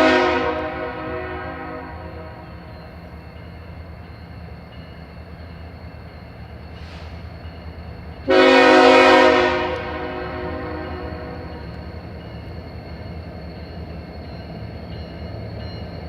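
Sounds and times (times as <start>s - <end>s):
locomotive air horn blast: 0.0s - 2.4s, 8.3s - 11.5s
freight train rumble: 0.0s - 16.0s.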